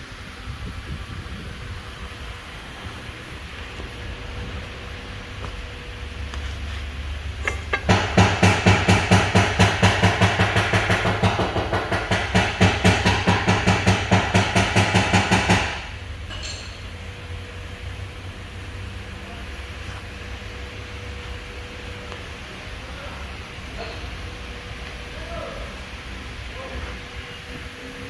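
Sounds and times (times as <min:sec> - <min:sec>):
steady hum: 0:00.0 - 0:28.0
rapid mechanical impacts: 0:07.4 - 0:16.0.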